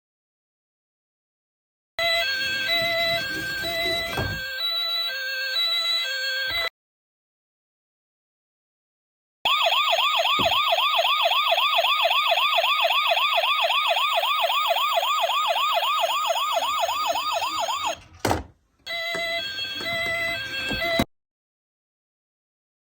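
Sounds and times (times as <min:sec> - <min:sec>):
ambulance siren yelping: 0:02.0 - 0:06.7, 0:09.5 - 0:18.0, 0:18.9 - 0:21.1
thump: 0:10.4 - 0:10.6.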